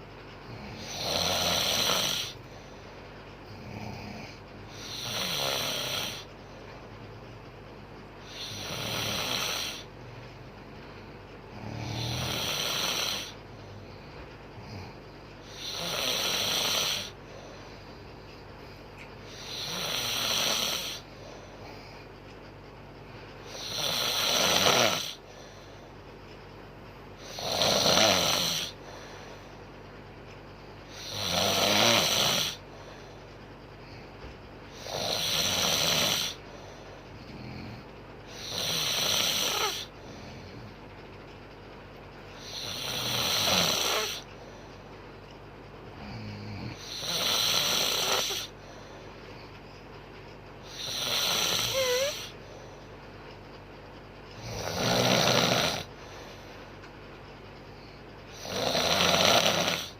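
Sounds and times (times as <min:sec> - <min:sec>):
woman snoring: 0:00.5 - 0:02.4, 0:03.5 - 0:06.3, 0:08.2 - 0:09.9, 0:11.5 - 0:13.4, 0:14.6 - 0:17.2, 0:19.3 - 0:21.1, 0:23.5 - 0:25.2, 0:27.2 - 0:28.8, 0:30.9 - 0:32.6, 0:34.7 - 0:36.4, 0:37.2 - 0:40.7, 0:42.4 - 0:44.3, 0:46.0 - 0:48.6, 0:50.6 - 0:52.4, 0:54.4 - 0:56.0, 0:58.3 - 0:59.9.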